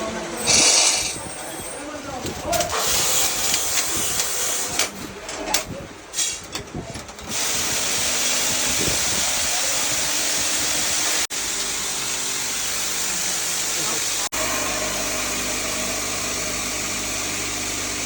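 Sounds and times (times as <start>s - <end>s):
loud hiss: 0.4s - 1.2s, 7.3s - 14.3s.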